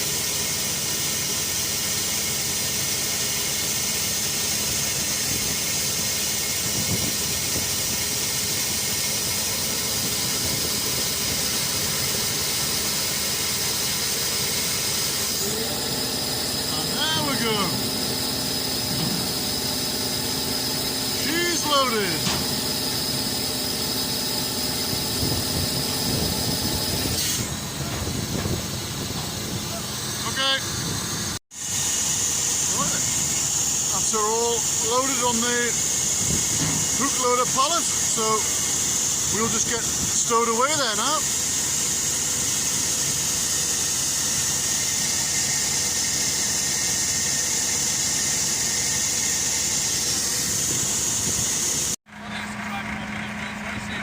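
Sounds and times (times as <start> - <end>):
crane hydraulics hissing: 0.0 - 53.6
truck engine hum: 0.0 - 54.0
high whine: 6.4 - 31.4.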